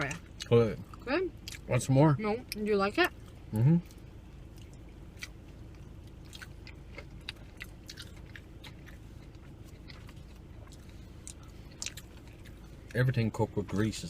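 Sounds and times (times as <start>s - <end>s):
steady low hum: 0.0s - 14.0s
chewing crunchy food: 3.1s - 13.8s.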